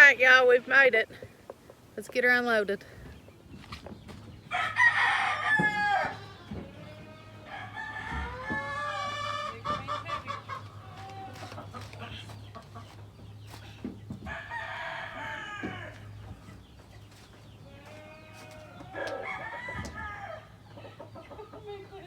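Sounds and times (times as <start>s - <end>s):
chickens clucking: 0.7s - 2.2s, 2.8s - 22.0s
rooster crowing: 4.5s - 9.7s, 14.3s - 16.2s, 18.7s - 20.6s.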